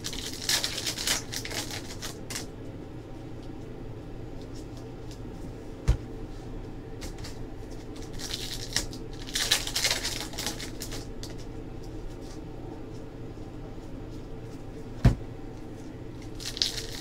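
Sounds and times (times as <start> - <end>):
packaging rustling and crinkling: 0.0 - 2.5, 7.2 - 12.4, 16.2 - 17.0
steady low hum: 0.0 - 17.0.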